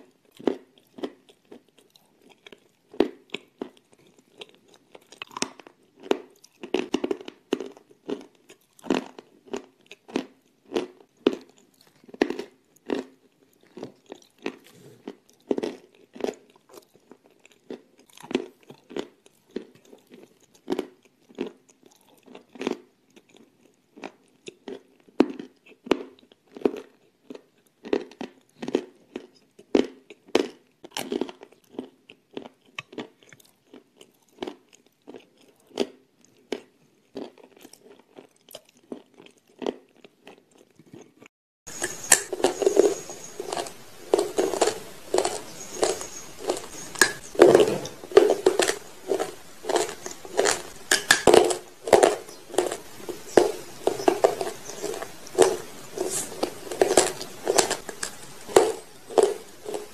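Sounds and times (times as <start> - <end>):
crunchy biting and chewing: 0.0 - 59.9
steady hiss: 41.7 - 59.9.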